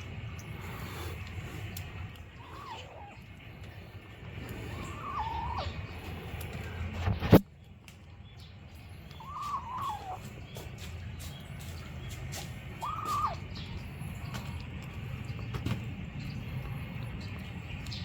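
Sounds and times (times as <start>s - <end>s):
kitten squeaky calls: 2.4s - 3.3s, 4.7s - 5.9s, 9.1s - 10.3s, 12.7s - 13.8s.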